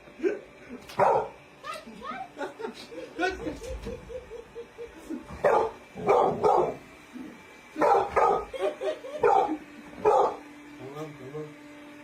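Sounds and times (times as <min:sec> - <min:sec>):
dog yipping: 0:01.0 - 0:01.3, 0:05.4 - 0:06.8, 0:07.8 - 0:10.4
dog barking: 0:01.0 - 0:01.4, 0:05.4 - 0:06.8, 0:07.8 - 0:10.4.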